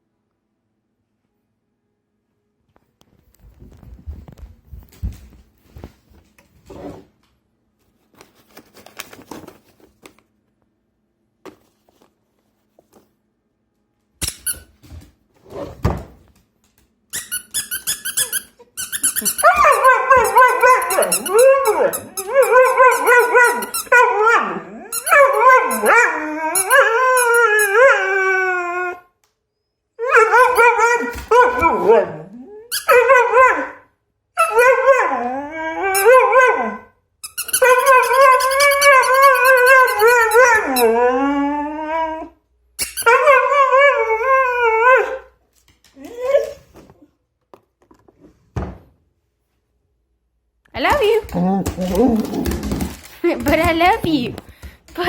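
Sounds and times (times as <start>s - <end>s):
dog whining and howling: 18.5s - 45.4s, 46.0s - 46.8s.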